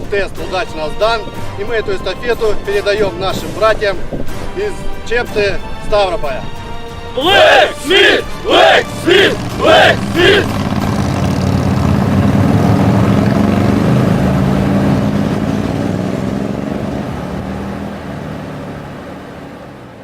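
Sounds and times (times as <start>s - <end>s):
motorcycle engines running: 8.0s - 20.0s.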